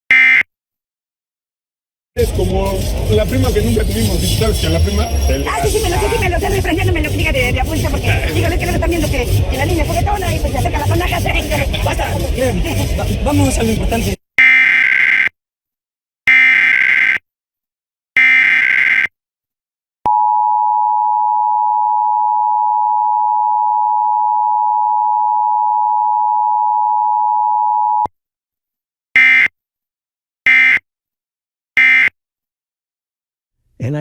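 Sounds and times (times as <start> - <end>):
screeching data bursts: 2.2 - 14.2
two-tone attention signal: 3.9 - 8.4.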